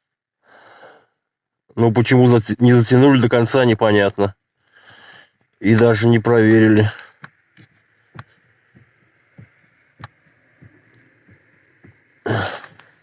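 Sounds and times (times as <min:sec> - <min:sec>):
steering shaft knocking: 0:08.1 - 0:13.0.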